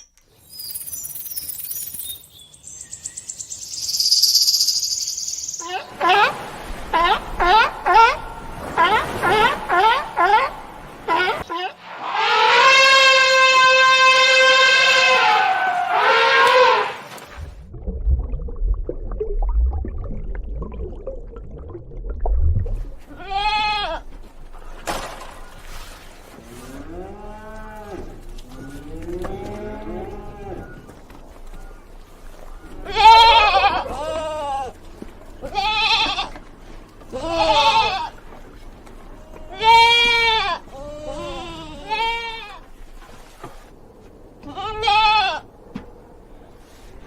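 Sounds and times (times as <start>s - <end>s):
low rumble: 17.4s - 23.1s.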